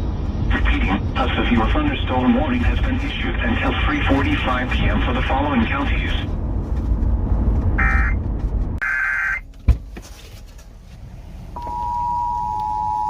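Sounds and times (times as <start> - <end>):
two-tone alert signal: 7.8 - 8.2.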